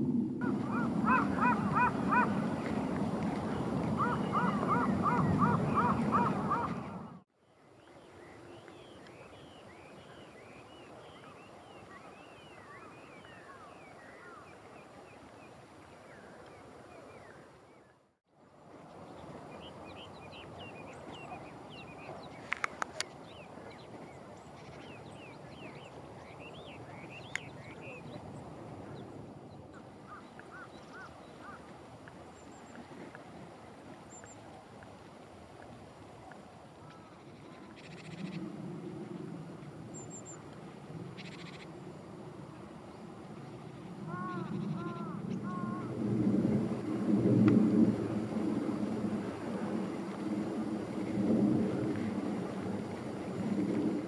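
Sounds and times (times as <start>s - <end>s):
waterfowl honking: 0.4s - 2.5s, 4.0s - 7.1s.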